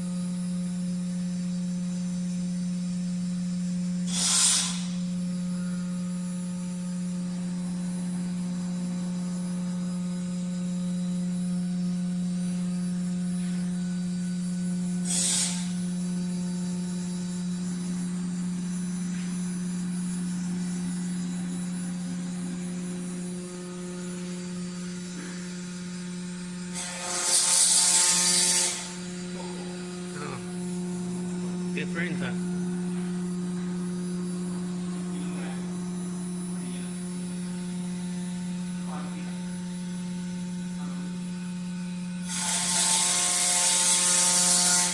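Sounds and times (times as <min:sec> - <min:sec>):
cnc router humming: 0:00.0 - 0:44.9
air hiss: 0:04.0 - 0:05.0, 0:15.0 - 0:15.8.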